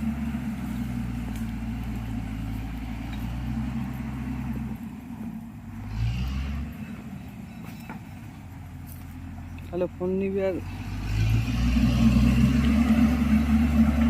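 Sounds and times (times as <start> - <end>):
diesel engine running: 0.0 - 14.0.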